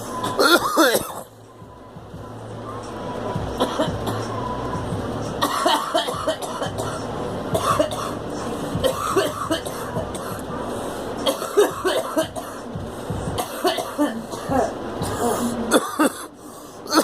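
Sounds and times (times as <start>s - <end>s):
girl coughing: 0.4s - 1.3s, 8.8s - 10.4s, 11.3s - 12.6s, 13.4s - 16.3s.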